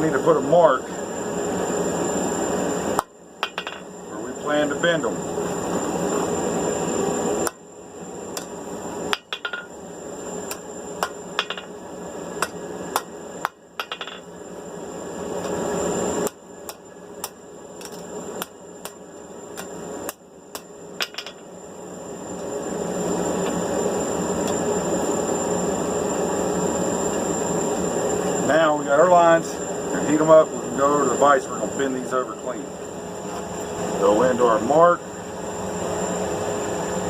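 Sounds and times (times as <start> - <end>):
workshop background noise: 2.9 - 7.6, 8.3 - 14.4, 15.4 - 21.5, 28.9 - 34.9.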